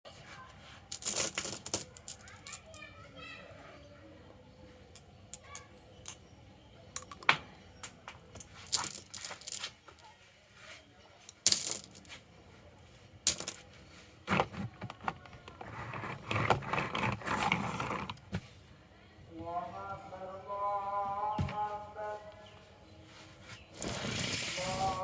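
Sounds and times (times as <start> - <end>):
marbles rolling down wooden track: 0.9 - 2.8, 8.6 - 9.6, 14.3 - 18.2.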